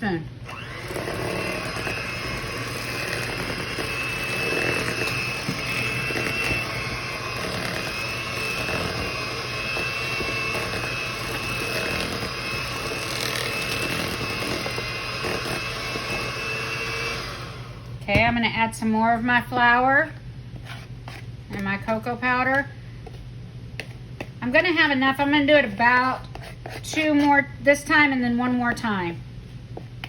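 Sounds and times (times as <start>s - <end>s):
electric mixer whining: 0.0s - 18.0s.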